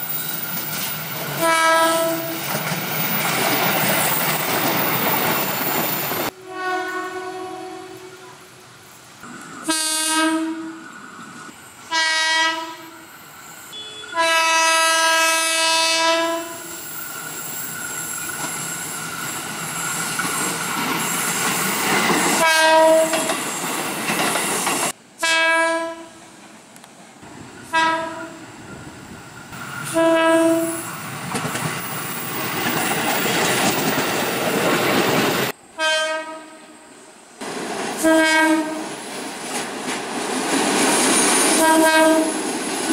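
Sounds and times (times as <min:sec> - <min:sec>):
train rumbling and wheels clattering: 0:00.0 - 0:25.3, 0:25.9 - 0:42.9
train horn blasts: 0:01.4 - 0:02.4, 0:06.3 - 0:08.5, 0:09.6 - 0:10.8, 0:11.8 - 0:13.1, 0:13.7 - 0:16.8, 0:22.4 - 0:23.3, 0:25.2 - 0:26.2, 0:27.7 - 0:28.4, 0:29.8 - 0:30.8, 0:35.8 - 0:36.9, 0:38.0 - 0:38.9, 0:41.6 - 0:42.4.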